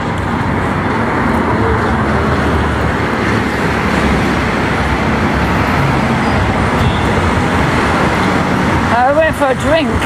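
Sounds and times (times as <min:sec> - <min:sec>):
road traffic rumble and hiss: 0:00.0 - 0:10.0.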